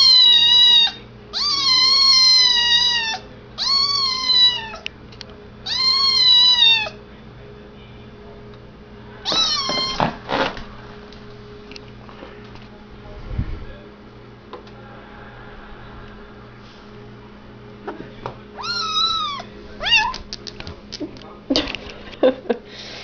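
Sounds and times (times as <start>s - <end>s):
kitten meowing: 0.0s - 4.8s, 5.7s - 7.0s, 9.2s - 10.1s, 18.6s - 20.3s.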